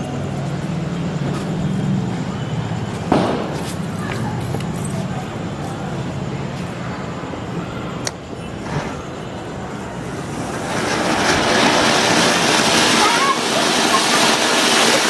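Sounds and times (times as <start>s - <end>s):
firework rushing hiss: 3.0s - 3.9s, 8.5s - 15.0s.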